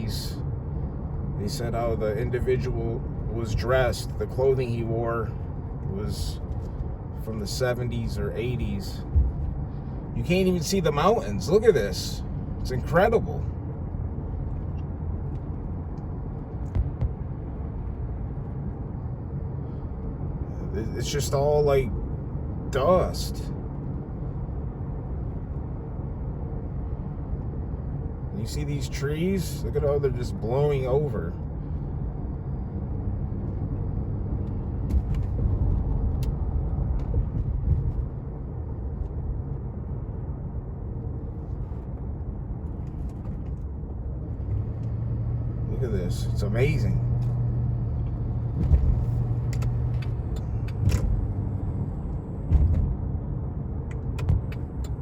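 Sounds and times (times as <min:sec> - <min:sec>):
gusty wind buffeting microphone: 0:09.0 - 0:10.2, 0:31.4 - 0:44.7.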